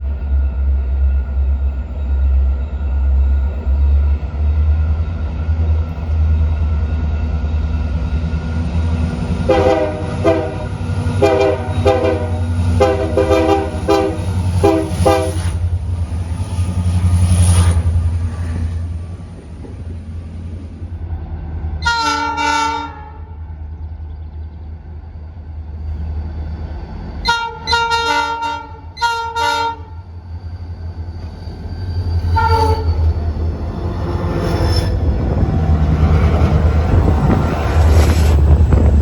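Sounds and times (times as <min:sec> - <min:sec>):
locomotive rumble: 0:00.0 - 0:39.0
train passing: 0:00.0 - 0:39.0
locomotive air horn toots: 0:09.4 - 0:15.6, 0:21.8 - 0:23.4, 0:27.2 - 0:30.1, 0:32.3 - 0:33.1.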